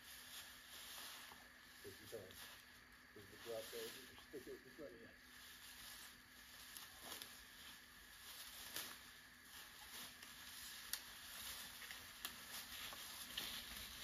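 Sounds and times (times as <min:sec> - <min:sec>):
faint steady hiss: 0:00.0 - 0:14.0
light ticks and rustles: 0:05.3 - 0:14.0.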